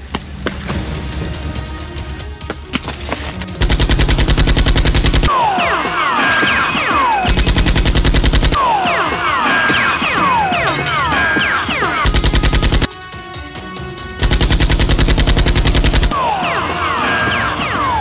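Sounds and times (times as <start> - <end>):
background music: 0.0 - 18.0
machine-gun fire bursts: 3.6 - 5.4, 6.7 - 8.6, 12.0 - 12.9, 14.2 - 16.2
high falling whistles: 16.3 - 18.0.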